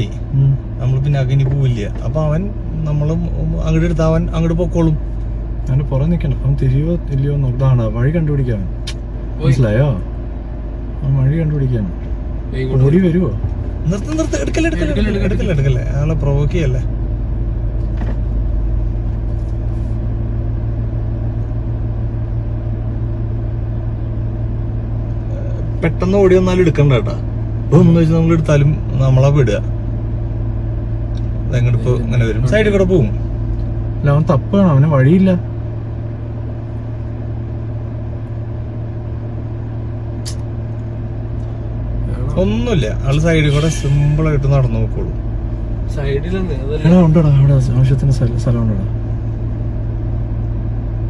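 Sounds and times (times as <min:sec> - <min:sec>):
vehicle engine idling: 0:00.0 - 0:51.0
short click: 0:40.2 - 0:40.5.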